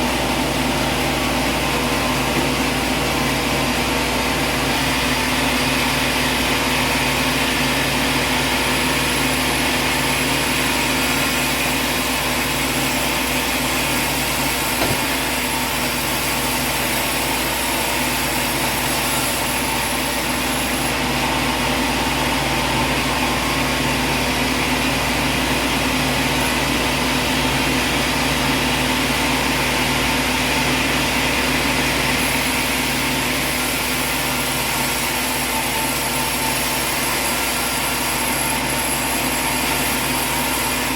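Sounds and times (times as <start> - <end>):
machine engine droning: 19.7 - 32.0.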